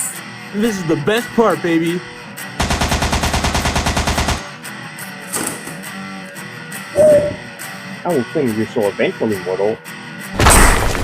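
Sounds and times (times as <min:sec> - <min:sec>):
guitar background music: 0:00.0 - 0:11.0
machine-gun fire: 0:02.6 - 0:04.5.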